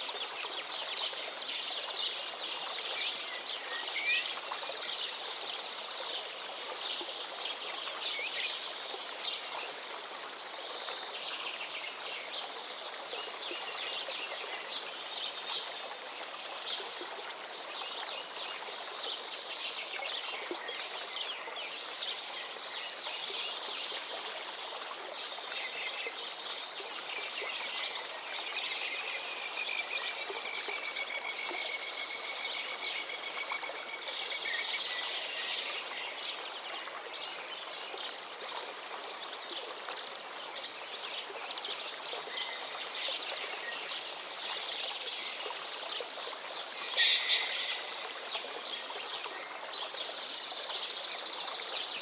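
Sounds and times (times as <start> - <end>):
river water flowing: 0.0 - 52.0
small birds chirping: 40.6 - 51.1.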